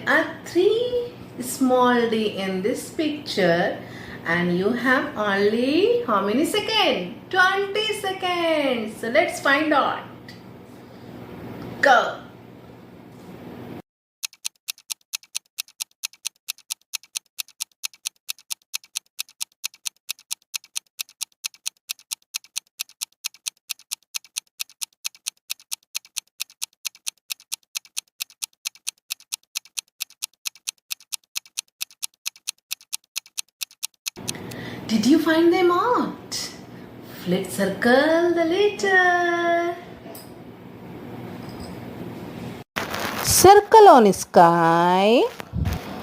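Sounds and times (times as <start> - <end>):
clock ticking: 14.2 - 34.5.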